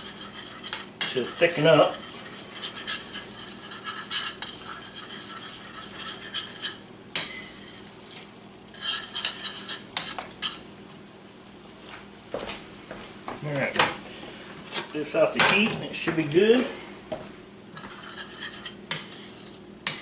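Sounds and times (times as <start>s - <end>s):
utensil clinking and scraping pan: 0.0s - 10.6s, 17.8s - 20.0s.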